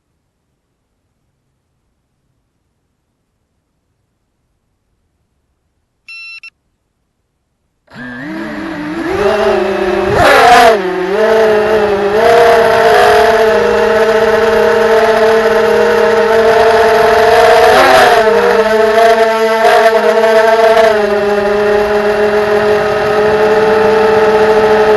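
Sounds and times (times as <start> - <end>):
short electronic beeps: 6.1 - 6.6
quadcopter motors whining: 7.9 - 24.9.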